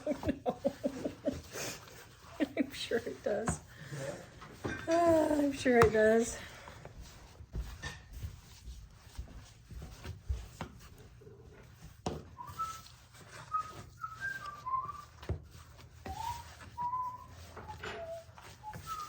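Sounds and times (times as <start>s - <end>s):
person whistling a tune: 12.4s - 15.3s, 16.0s - 19.0s.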